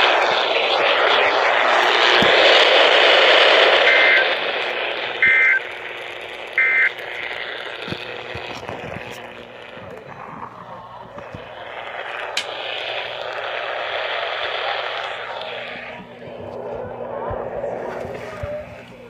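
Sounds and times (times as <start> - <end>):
radio static hiss: 0.0 - 19.0
two-tone digital data bursts: 3.8 - 4.4, 5.2 - 5.8, 6.6 - 7.4.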